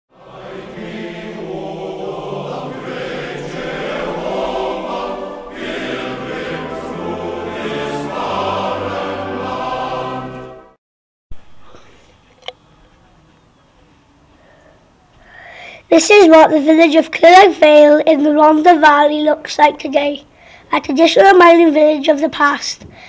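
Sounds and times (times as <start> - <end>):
choir singing: 0.1 - 10.8.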